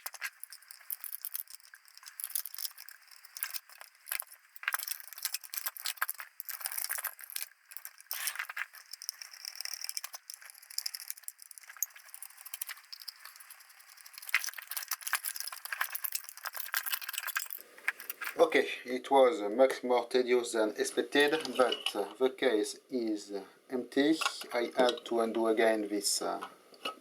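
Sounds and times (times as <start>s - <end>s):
metal parts clinking and rattling: 0.0s - 18.4s.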